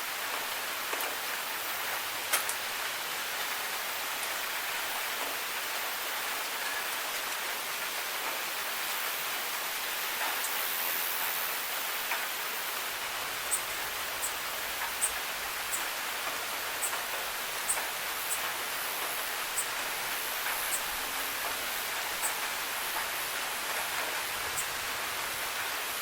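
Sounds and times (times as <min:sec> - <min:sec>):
steady rain: 0:00.0 - 0:26.0
raindrop ticks: 0:02.3 - 0:02.6, 0:13.4 - 0:24.8.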